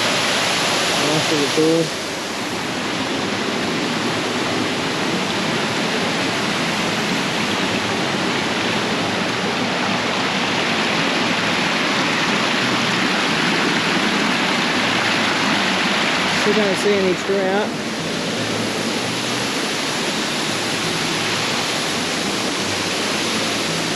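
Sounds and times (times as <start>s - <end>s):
waterfall rushing: 0.0s - 23.9s.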